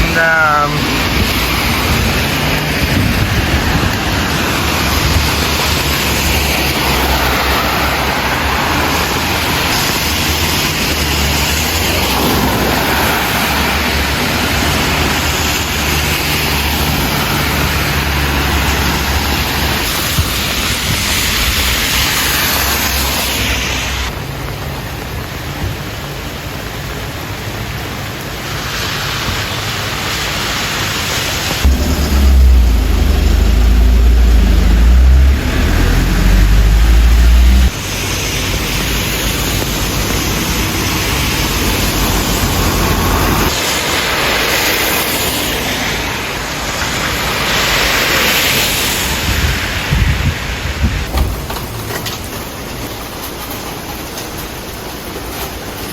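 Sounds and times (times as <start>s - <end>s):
heavy downpour hiss: 0.0s - 55.9s
loud deep rumble: 31.6s - 38.7s.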